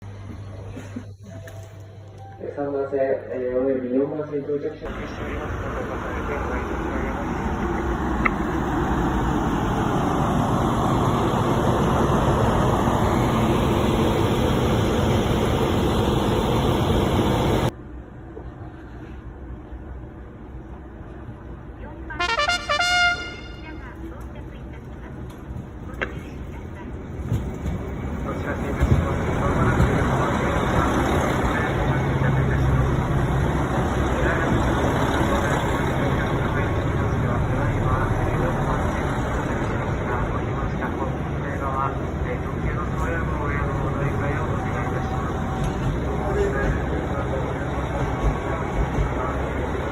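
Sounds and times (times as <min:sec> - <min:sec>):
train rumbling: 0:04.8 - 0:49.9
faint voices: 0:23.4 - 0:49.9.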